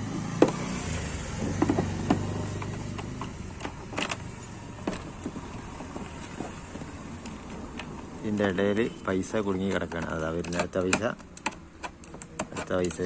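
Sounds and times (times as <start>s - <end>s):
scooter engine humming: 0.0s - 9.0s
clicks and rattles of loose objects: 1.4s - 13.0s.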